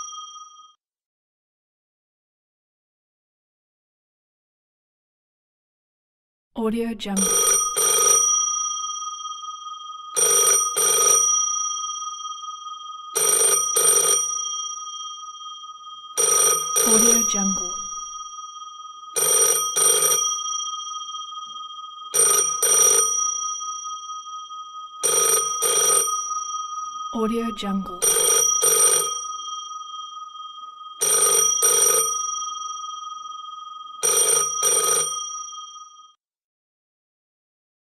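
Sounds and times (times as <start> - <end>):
telephone bell ringing: 0.0 - 0.8, 7.2 - 36.2.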